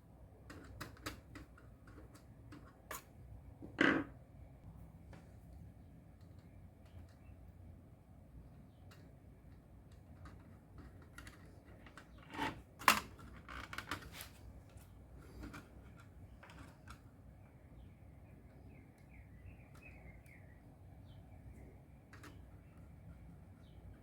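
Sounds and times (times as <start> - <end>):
faint bird chirps: 17.4 - 24.0.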